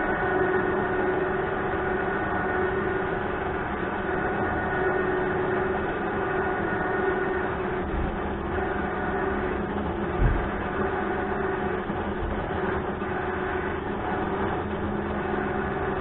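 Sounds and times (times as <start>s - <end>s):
motor humming: 0.0s - 16.0s
short low thump: 10.2s - 10.5s.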